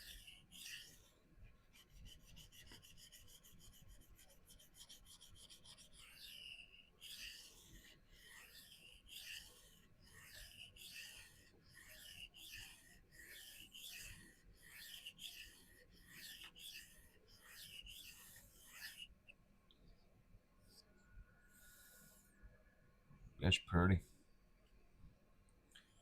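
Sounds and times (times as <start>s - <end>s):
knife scraping on sharpening stone: 5.1s - 19.1s.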